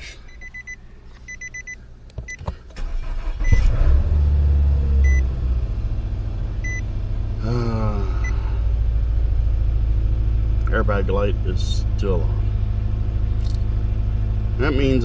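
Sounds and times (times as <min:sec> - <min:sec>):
car engine cranking and idling: 0:00.0 - 0:15.0
dashboard chime beeping: 0:00.3 - 0:02.4.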